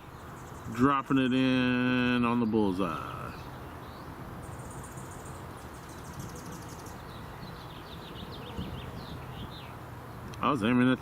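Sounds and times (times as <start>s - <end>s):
bird chirps: 0.0s - 10.3s
wind buffeting microphone: 5.6s - 10.4s.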